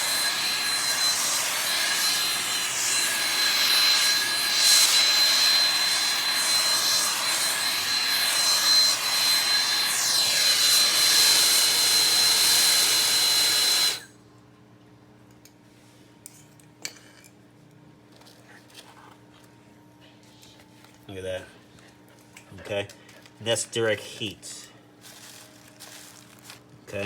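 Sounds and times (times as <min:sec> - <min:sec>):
gas torch flame roaring: 0:00.0 - 0:14.1.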